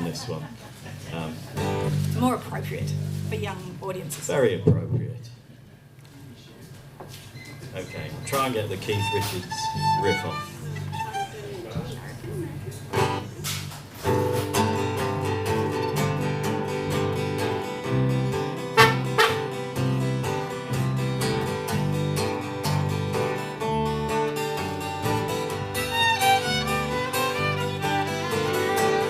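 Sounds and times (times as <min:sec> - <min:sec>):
guitar riff: 0:01.6 - 0:03.3, 0:08.8 - 0:11.5, 0:12.9 - 0:29.0
fiddle: 0:08.6 - 0:12.1, 0:18.8 - 0:19.6, 0:24.1 - 0:29.0.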